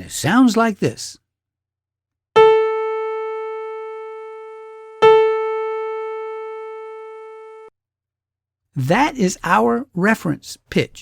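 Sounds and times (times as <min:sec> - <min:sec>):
piano note ringing: 0:02.4 - 0:07.7.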